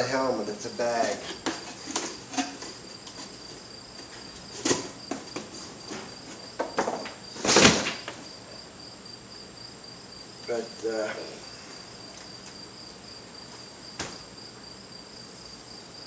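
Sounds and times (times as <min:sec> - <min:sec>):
crickets chirping: 0:00.0 - 0:16.0
box knocks and rustles: 0:04.5 - 0:08.2, 0:14.0 - 0:14.3.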